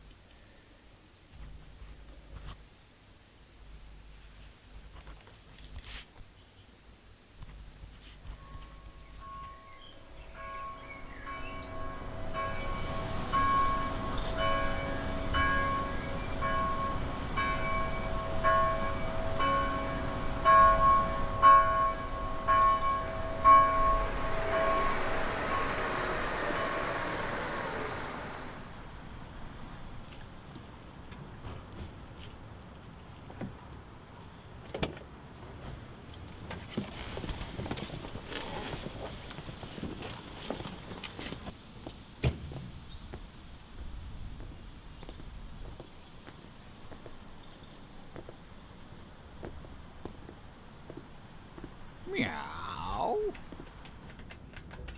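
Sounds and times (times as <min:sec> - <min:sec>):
bells ringing in a peal: 0:08.4 - 0:27.1.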